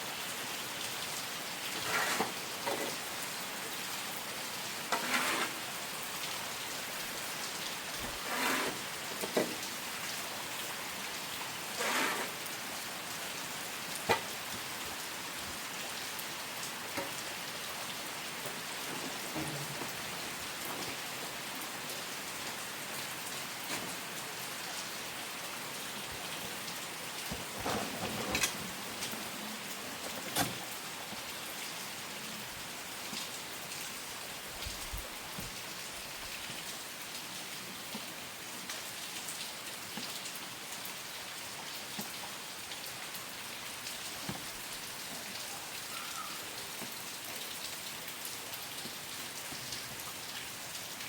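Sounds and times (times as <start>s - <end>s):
steady rain falling: 0.0s - 51.0s.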